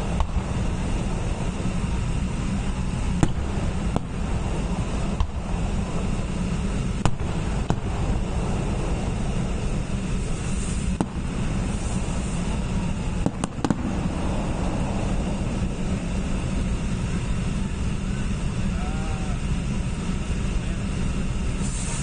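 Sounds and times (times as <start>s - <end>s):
low rumble: 0.0s - 22.0s
fireworks bangs: 3.0s - 16.4s.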